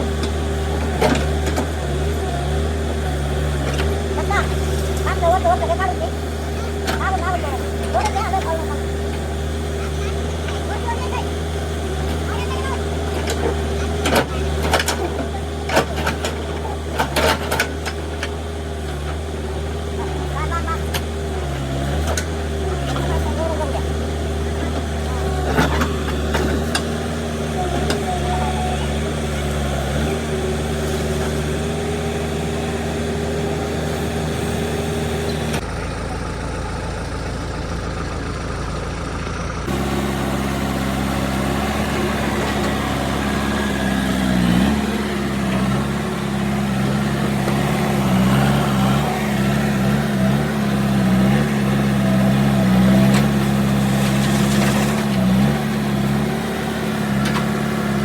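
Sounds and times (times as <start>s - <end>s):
heavy machine engine running: 0.0s - 58.0s.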